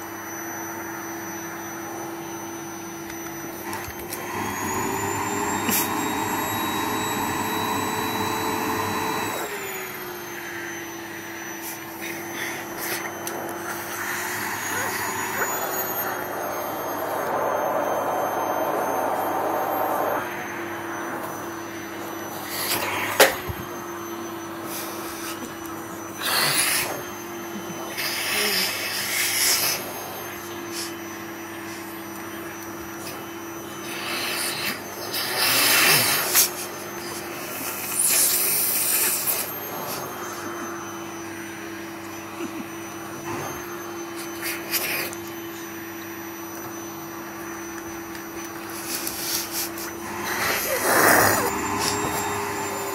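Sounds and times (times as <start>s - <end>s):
vacuum cleaner motor hum: 0.0s - 52.9s
vacuum rushing noise: 3.3s - 25.0s, 48.8s - 52.9s.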